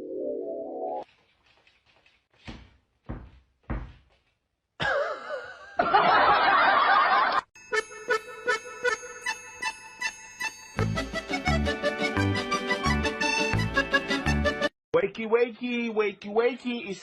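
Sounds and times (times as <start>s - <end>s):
dull thumps: 2.4s - 4.4s
loud laughter: 4.8s - 7.4s.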